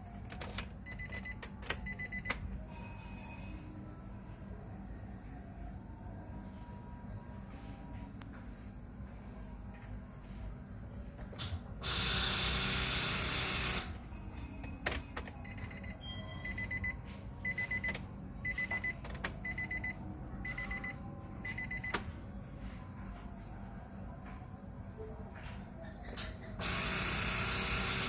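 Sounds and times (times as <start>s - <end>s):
rapid high warning beeps: 0.9s - 2.3s, 15.4s - 22.0s.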